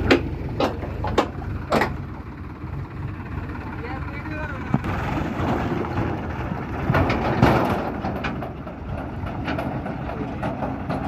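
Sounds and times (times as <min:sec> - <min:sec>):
knocks and clanks: 0:00.0 - 0:02.1, 0:04.6 - 0:11.0
tractor engine rumbling: 0:00.0 - 0:11.0.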